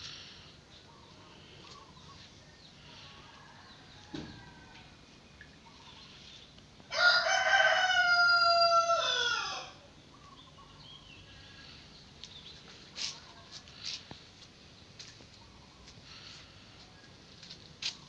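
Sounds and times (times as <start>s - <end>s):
rooster crowing: 6.9s - 9.8s.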